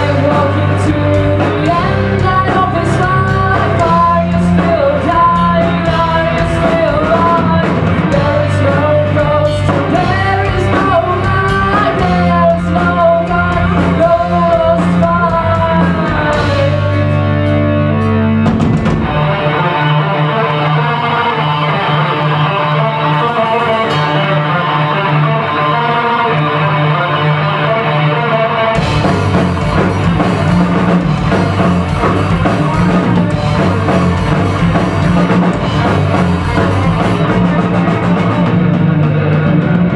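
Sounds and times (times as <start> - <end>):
woman singing: 0.0 - 17.2
rock band playing live: 0.0 - 39.9.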